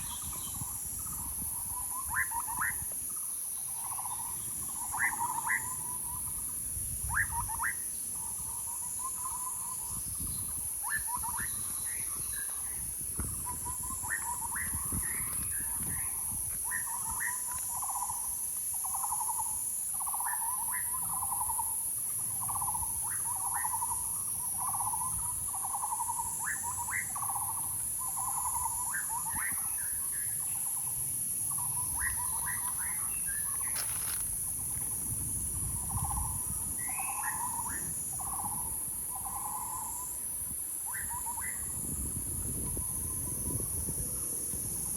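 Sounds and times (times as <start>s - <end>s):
bird calling with chirps: 3.6s - 6.2s, 22.4s - 34.3s, 35.8s - 40.2s.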